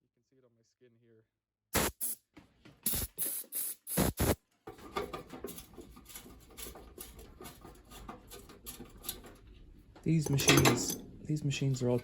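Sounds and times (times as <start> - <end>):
compressed air blasts: 1.8 - 2.2, 2.8 - 4.4
metal parts clicking and rattling: 4.7 - 9.5, 10.1 - 11.1.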